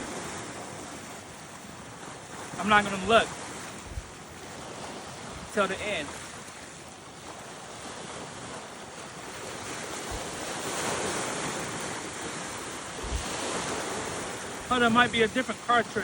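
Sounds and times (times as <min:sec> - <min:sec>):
water waves: 0:00.0 - 0:16.0
wind rushing: 0:10.0 - 0:14.5.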